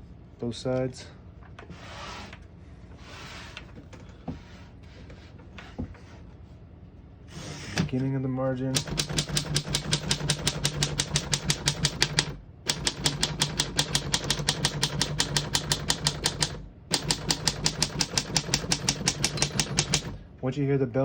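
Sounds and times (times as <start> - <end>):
typewriter keys clacking: 8.8 - 20.2.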